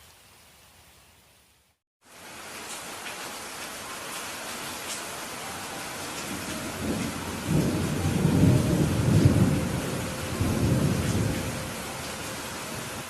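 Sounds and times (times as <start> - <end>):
steady rain: 0.0 - 13.0
thunder rumbling: 5.8 - 13.0.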